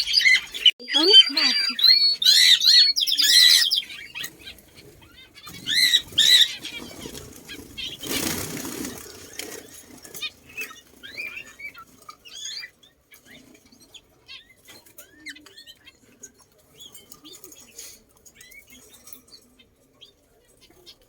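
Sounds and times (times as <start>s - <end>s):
birds chirping: 0.0s - 21.0s
wing flutters: 4.2s - 12.2s.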